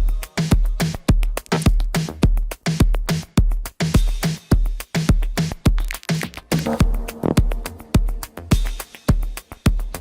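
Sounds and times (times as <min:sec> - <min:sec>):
electronic dance music: 0:06.1 - 0:10.0.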